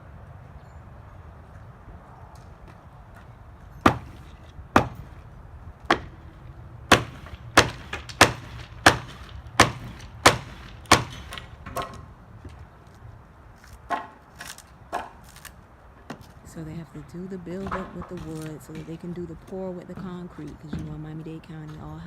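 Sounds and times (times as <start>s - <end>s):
blows on wooden formwork: 3.2s - 12.8s.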